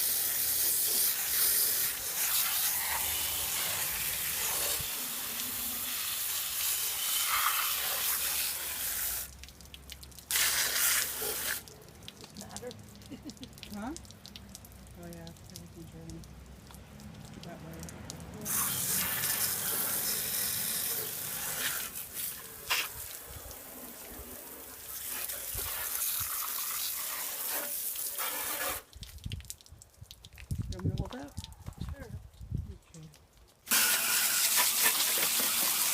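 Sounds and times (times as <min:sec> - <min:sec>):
water spray hissing: 0:00.0 - 0:11.8, 0:18.3 - 0:29.0, 0:33.7 - 0:35.9.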